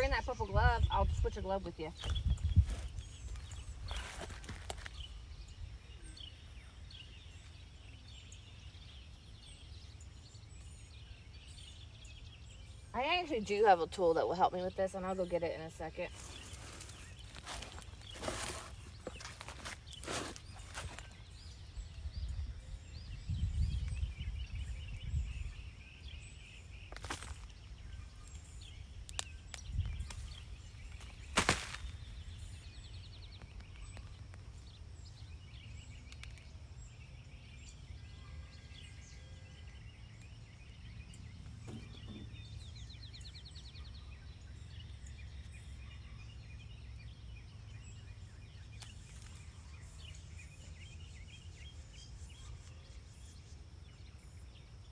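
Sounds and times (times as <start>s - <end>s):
wind rumble on microphone: 0.0s - 5.9s, 20.6s - 26.8s, 27.6s - 35.9s
birds chirping faintly: 0.0s - 54.9s.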